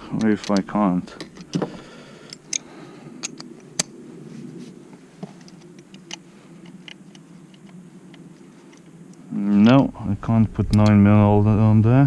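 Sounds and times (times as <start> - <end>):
faint steady hum: 0.0 - 12.0
light metallic clicks and taps: 0.2 - 1.7.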